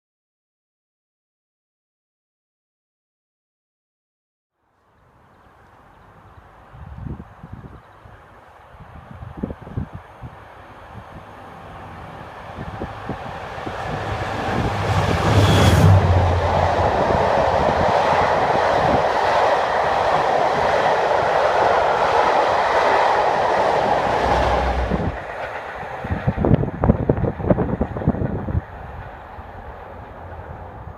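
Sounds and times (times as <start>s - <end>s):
diesel locomotive engine: 5.4s - 30.9s
train wheels rumbling on rails: 6.5s - 30.9s.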